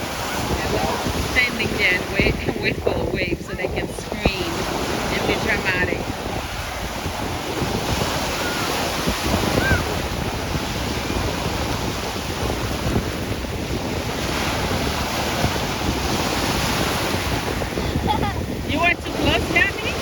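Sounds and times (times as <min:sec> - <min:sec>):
ocean surf breaking: 0:00.0 - 0:20.0
wind buffeting microphone: 0:00.0 - 0:20.0.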